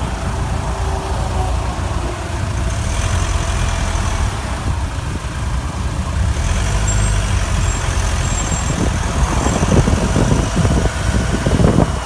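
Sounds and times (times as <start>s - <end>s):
diesel engine idling: 0.0s - 12.0s
rough clattering engine sound: 0.0s - 12.0s
short high-pitched squeaks: 6.8s - 9.8s.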